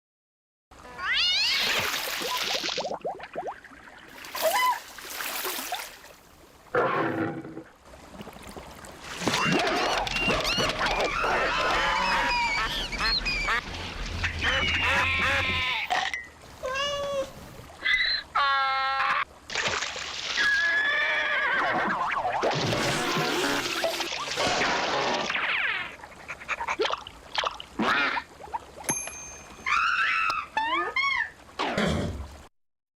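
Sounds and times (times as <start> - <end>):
honking and quacking calls: 11.5 - 16.2.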